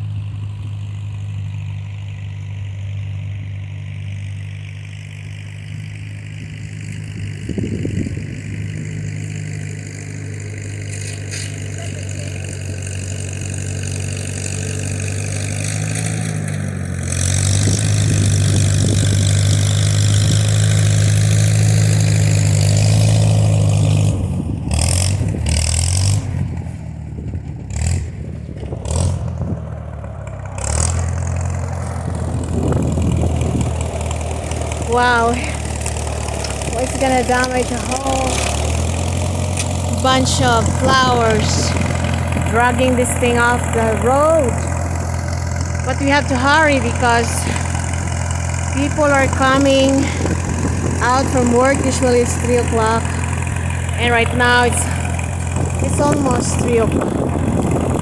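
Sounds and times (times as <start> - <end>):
vehicle engine running: 0.0 - 58.0.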